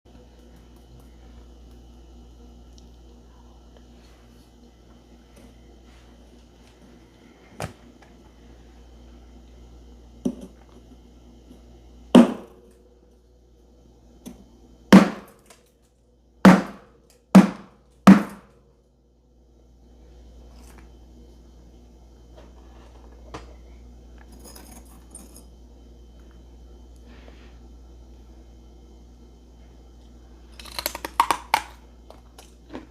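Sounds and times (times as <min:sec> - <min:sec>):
frost crunching: 0:30.6 - 0:31.6.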